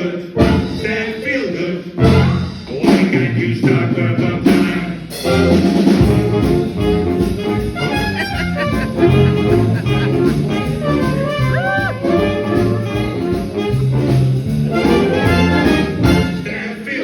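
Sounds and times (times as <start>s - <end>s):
brass instruments playing: 0.0s - 2.9s, 4.4s - 17.0s
moving bass line: 5.3s - 16.5s.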